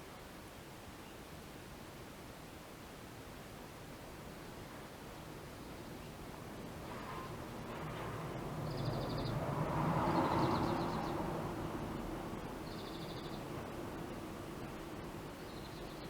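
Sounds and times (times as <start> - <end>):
vehicle passing: 7.7 - 12.6.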